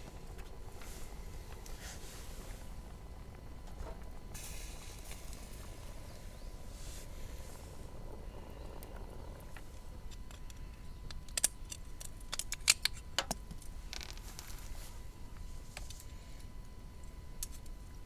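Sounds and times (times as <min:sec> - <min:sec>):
low background rumble: 0:00.0 - 0:18.0
brief hiss: 0:04.4 - 0:05.7.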